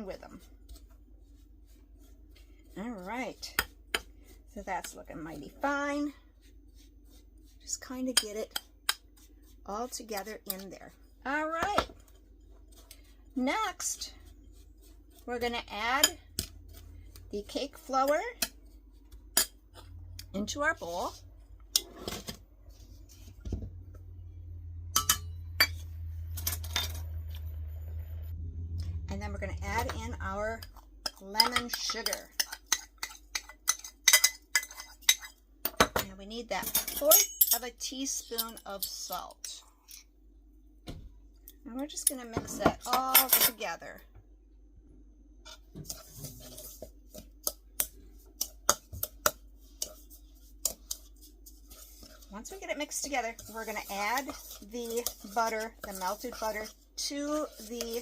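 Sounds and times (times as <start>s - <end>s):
utensil scraping in bowl: 0.0s - 23.4s, 29.3s - 35.4s, 45.4s - 58.0s
low steady hum: 0.0s - 58.0s
utensils clinking against bowl: 36.6s - 40.0s, 42.1s - 43.6s.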